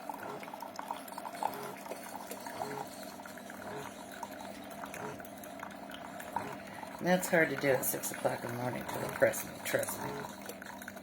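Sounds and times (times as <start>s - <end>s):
coffee streaming into a glass mug: 0.0s - 11.0s
gurgles and drips: 0.0s - 11.0s.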